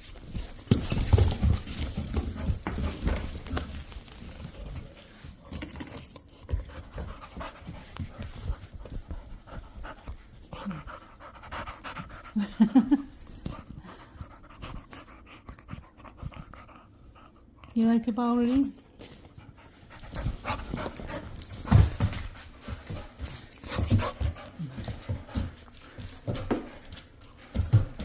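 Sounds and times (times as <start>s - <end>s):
electronic toy mouse squeaks: 0.0s - 4.0s, 5.4s - 6.4s, 7.4s - 7.7s, 8.3s - 8.8s, 11.8s - 12.0s, 13.1s - 16.8s, 18.5s - 18.8s, 21.4s - 22.2s, 23.4s - 24.2s, 25.6s - 26.0s
puppy panting: 0.0s - 4.2s, 5.4s - 17.7s, 19.4s - 26.4s.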